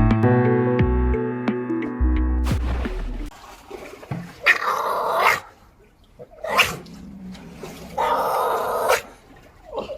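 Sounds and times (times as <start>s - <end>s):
seal calling: 6.3s - 9.2s.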